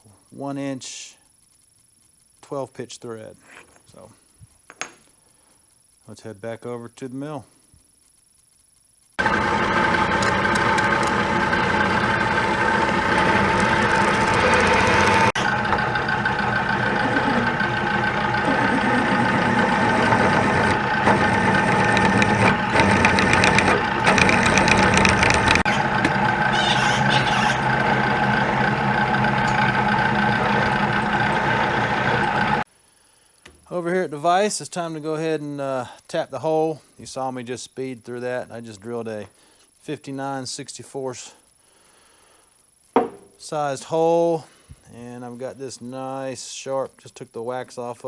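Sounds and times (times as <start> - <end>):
milling machine whine: 9.2 - 32.7.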